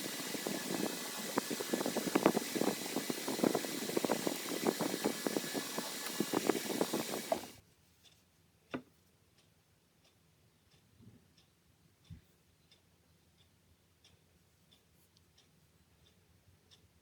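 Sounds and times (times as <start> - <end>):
fan hiss: 0.0 - 7.6.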